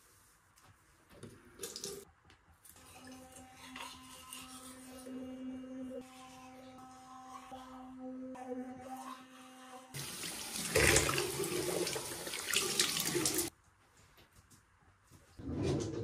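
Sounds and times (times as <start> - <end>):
tap water running into sink: 10.0 - 13.5.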